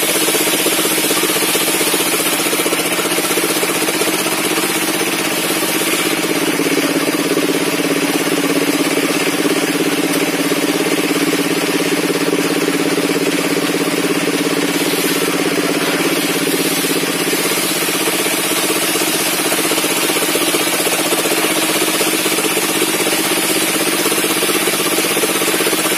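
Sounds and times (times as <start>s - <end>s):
engine running steadily: 0.0s - 25.9s.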